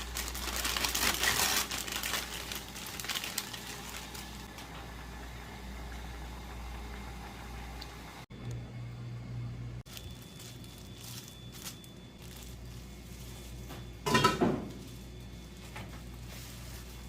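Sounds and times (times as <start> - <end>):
low steady hum: 0.0 - 17.0
dishes and utensils clinking: 14.0 - 14.8
dishes clattering: 14.0 - 14.8.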